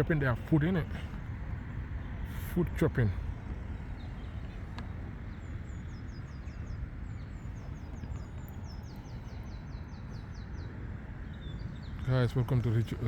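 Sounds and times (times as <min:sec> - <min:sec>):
low outdoor rumble: 0:00.0 - 0:13.0
small bird singing: 0:02.8 - 0:13.0.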